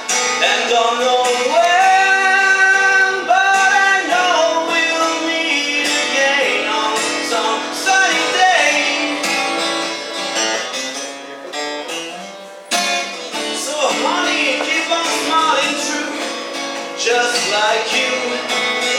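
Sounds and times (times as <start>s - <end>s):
person singing: 0.0s - 10.1s, 13.3s - 18.9s
acoustic guitar: 0.0s - 18.9s.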